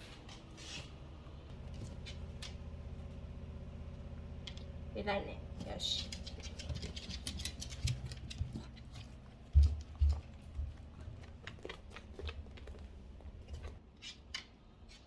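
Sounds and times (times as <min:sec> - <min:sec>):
dog claws clicking indoors: 0:01.7 - 0:02.7, 0:05.9 - 0:15.0.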